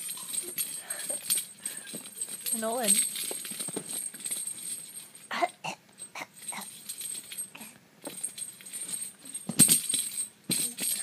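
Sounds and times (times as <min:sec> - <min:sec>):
baby coughing: 0:05.3 - 0:06.7.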